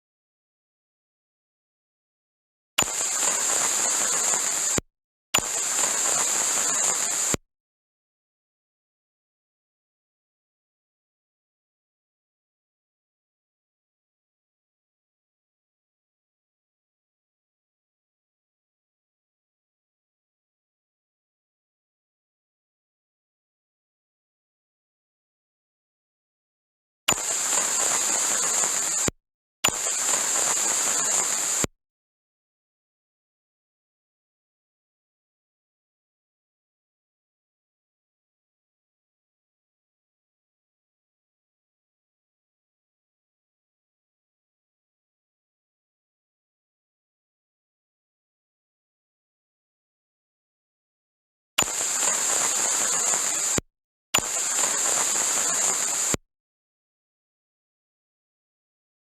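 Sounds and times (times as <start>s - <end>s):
radio static hiss: 2.8s - 4.8s, 5.4s - 7.4s, 27.1s - 29.1s, 29.7s - 31.7s, 51.6s - 53.6s, 54.2s - 56.2s.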